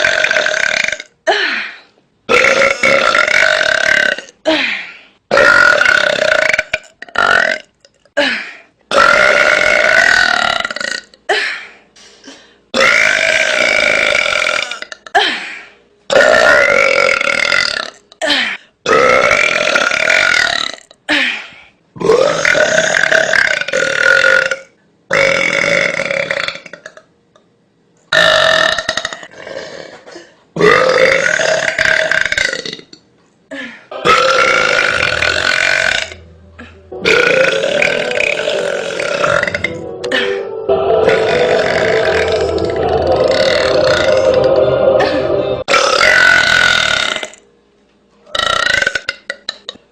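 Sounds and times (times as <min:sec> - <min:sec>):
woman belching loudly: 0:00.0 - 0:01.1, 0:02.3 - 0:04.4, 0:05.3 - 0:07.7, 0:08.9 - 0:11.1, 0:12.8 - 0:15.2, 0:16.1 - 0:18.0, 0:18.9 - 0:20.9, 0:22.0 - 0:27.0, 0:30.6 - 0:32.9, 0:34.0 - 0:36.3, 0:37.0 - 0:40.2, 0:41.1 - 0:44.3, 0:45.7 - 0:47.4, 0:48.3 - 0:49.6.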